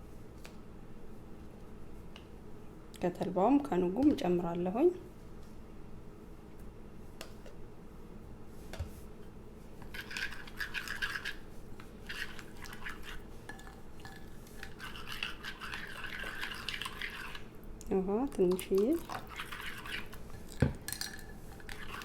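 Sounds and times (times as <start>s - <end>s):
spoon scraping seed mixture: 9.8s - 17.6s, 18.3s - 22.0s.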